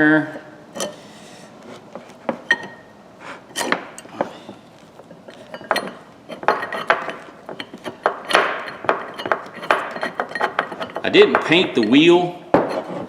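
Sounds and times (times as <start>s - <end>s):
metal clinks and knocks: 5.0s - 13.0s
metal scrapes: 5.3s - 13.0s.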